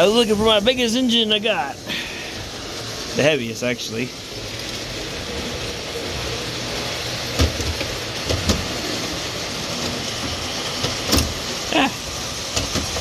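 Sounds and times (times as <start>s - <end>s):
model locomotive clicks and knocks: 7.0s - 9.0s, 9.7s - 11.6s, 12.4s - 13.0s.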